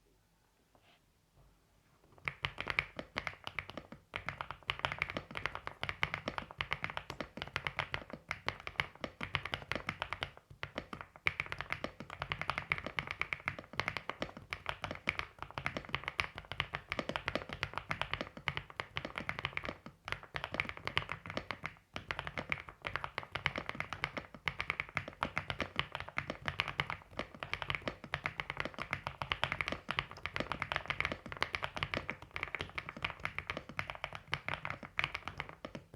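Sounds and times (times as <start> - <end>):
fast typing on mechanical keyboard: 2.2 - 35.9.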